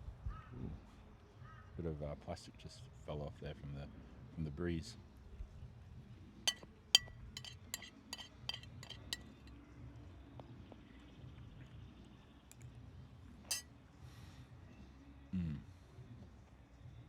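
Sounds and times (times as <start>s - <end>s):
cutlery clinking against a dish: 6.5s - 9.5s.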